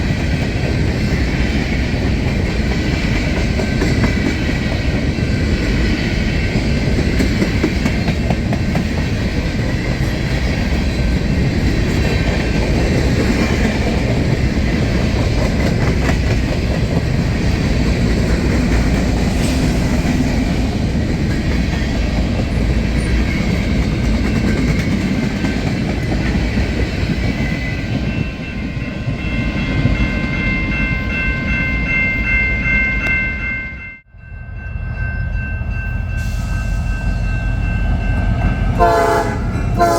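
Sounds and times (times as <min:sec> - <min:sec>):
clickety-clack of wheels: 0:00.0 - 0:28.4
train wheels rumbling on rails: 0:00.0 - 0:33.8, 0:34.8 - 0:39.9.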